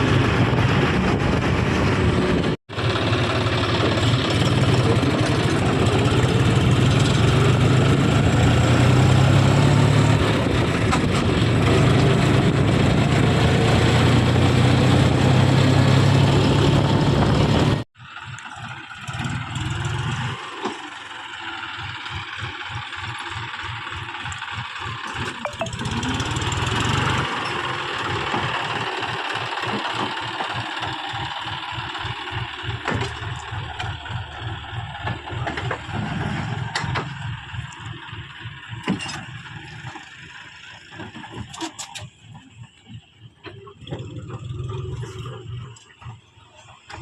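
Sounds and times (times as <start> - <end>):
tractor diesel engine running: 0.0 - 47.0.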